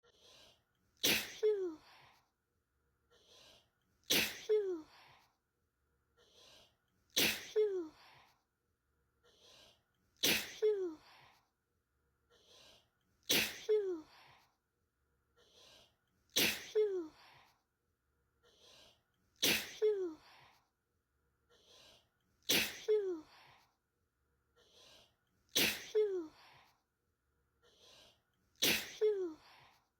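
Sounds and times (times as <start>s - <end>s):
person sneezing: 1.0s - 2.0s, 4.1s - 4.8s, 7.1s - 8.2s, 10.2s - 11.0s, 13.3s - 14.0s, 16.3s - 17.3s, 19.4s - 20.2s, 22.4s - 23.4s, 25.5s - 26.6s, 28.6s - 29.6s.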